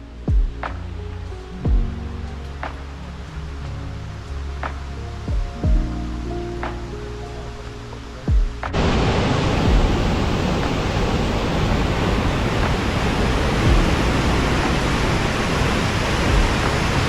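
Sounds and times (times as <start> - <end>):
loud steady rushing noise: 0.0 - 17.0
soft bass beat thumping: 0.2 - 3.1, 4.6 - 7.2, 8.2 - 8.9, 9.6 - 10.8, 13.6 - 14.9, 16.3 - 16.9.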